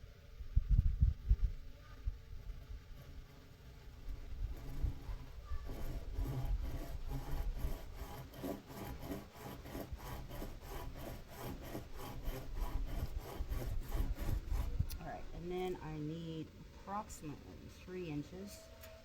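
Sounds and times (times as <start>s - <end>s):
hand saw cutting wood: 4.0s - 15.8s.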